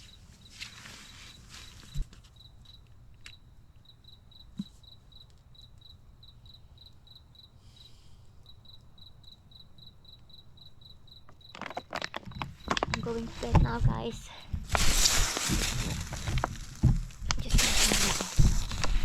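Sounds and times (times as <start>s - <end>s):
cricket chirping: 0.0s - 19.0s
soft low thump: 12.3s - 19.0s.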